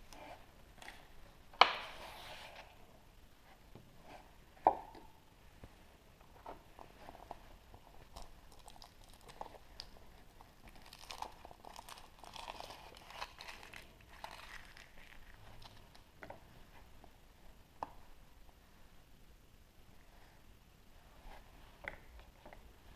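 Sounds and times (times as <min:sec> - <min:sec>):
wrapper crinkling: 0:08.1 - 0:16.1.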